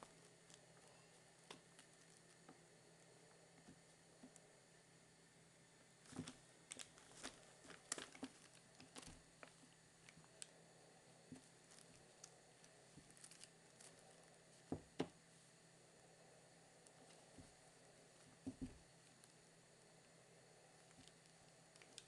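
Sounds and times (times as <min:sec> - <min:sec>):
kittens scuffling: 0:06.0 - 0:10.3.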